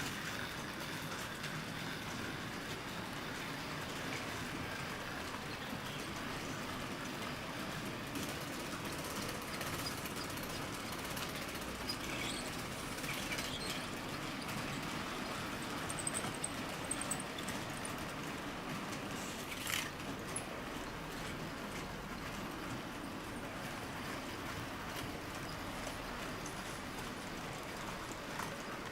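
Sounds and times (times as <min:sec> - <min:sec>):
model train wheels rumbling on track: 0:00.0 - 0:28.9.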